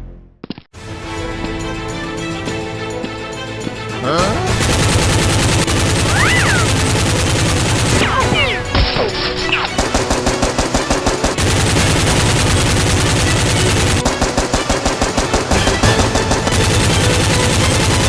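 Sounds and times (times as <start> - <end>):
automatic gunfire: 4.5 - 8.8, 9.6 - 18.0.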